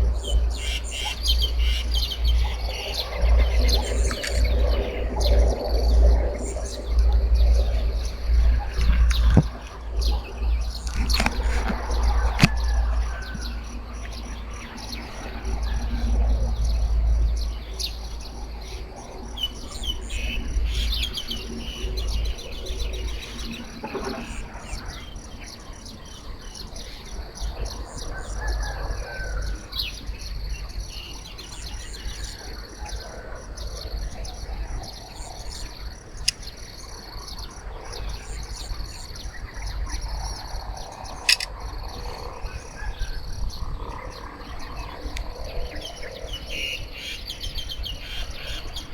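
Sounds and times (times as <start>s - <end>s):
faint insect drone: 0.0s - 48.9s
birds chirping: 0.6s - 5.4s, 6.4s - 14.2s, 41.1s - 41.5s.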